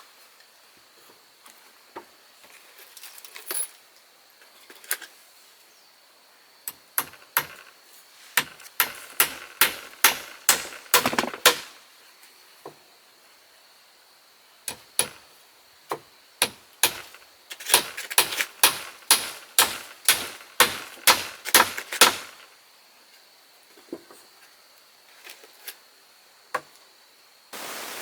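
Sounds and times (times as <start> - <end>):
hand tool striking wood: 6.7 - 7.7, 8.4 - 11.8, 14.7 - 15.2, 15.9 - 22.4.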